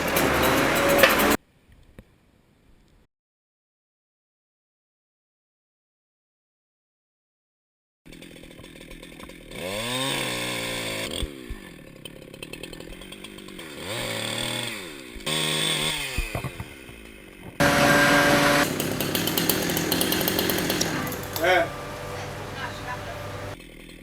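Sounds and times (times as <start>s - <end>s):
chainsaw idling and revving: 0.0s - 1.4s, 8.1s - 23.6s.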